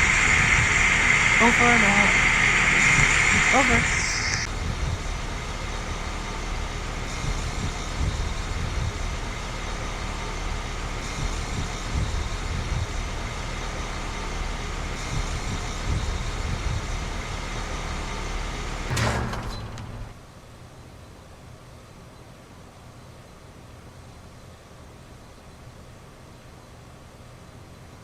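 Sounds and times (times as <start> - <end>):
air conditioner compressor hum: 0.0 - 20.1
condenser fan noise: 0.0 - 20.2
faint steady whine: 0.0 - 28.0.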